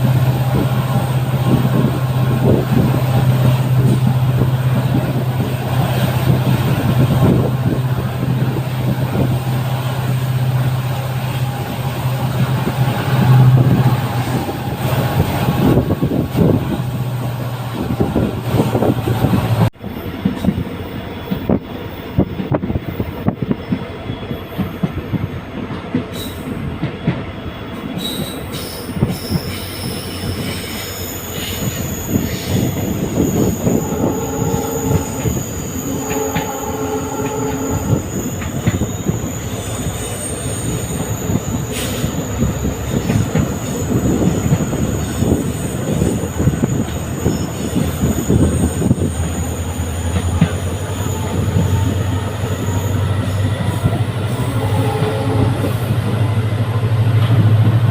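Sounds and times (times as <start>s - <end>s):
train wheels rumbling on rails: 0.0s - 57.9s
short pitched horn tones: 33.6s - 38.2s, 54.1s - 56.1s.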